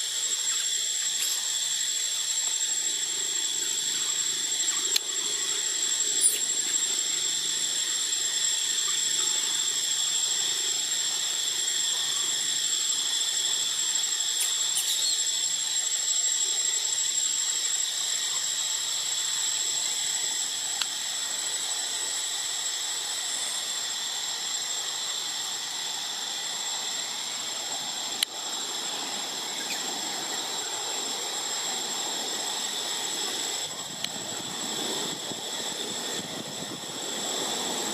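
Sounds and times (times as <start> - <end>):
high-pitched whining drone: 0.0 - 37.9.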